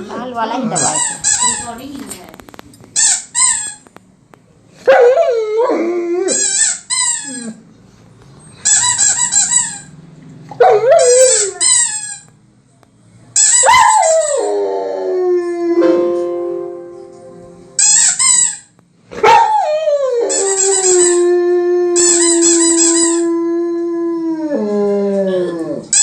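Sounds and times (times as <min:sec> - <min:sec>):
squeaky toy squeaking: 0:00.7 - 0:01.8, 0:03.0 - 0:03.9, 0:06.2 - 0:07.6, 0:08.5 - 0:10.0, 0:10.9 - 0:12.4, 0:13.4 - 0:14.6, 0:17.8 - 0:18.8, 0:20.2 - 0:23.3
dog howling: 0:10.6 - 0:11.6.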